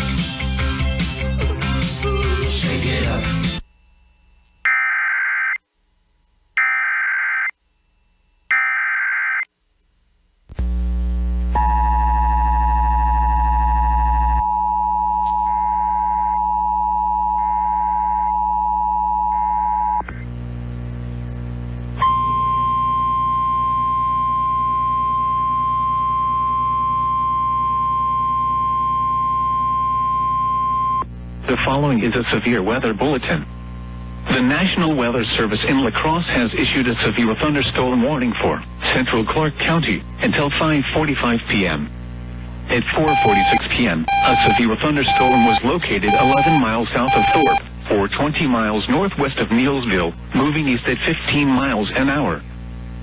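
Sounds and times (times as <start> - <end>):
single-tone warning alarm: 4.6 - 5.6, 6.6 - 7.5, 8.5 - 9.5, 43.1 - 47.6
buzzy data bursts: 43.1 - 47.6
two-tone attention signal: 43.1 - 47.6.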